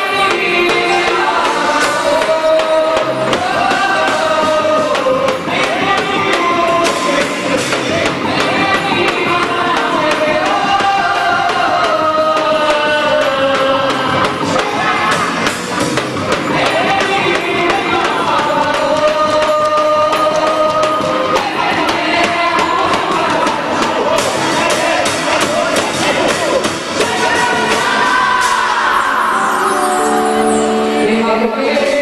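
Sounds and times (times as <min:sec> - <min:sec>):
steady percussion beat: 0:00.0 - 0:31.1
crowd in background: 0:00.0 - 0:32.0
person singing long notes: 0:16.5 - 0:32.0.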